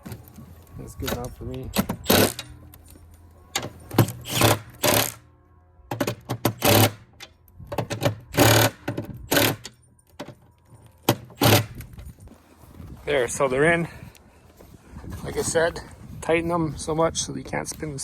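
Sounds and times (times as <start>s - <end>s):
impact driver bursts: 1.8s - 2.4s, 3.9s - 5.2s, 6.0s - 7.0s, 8.0s - 9.7s, 11.1s - 11.8s.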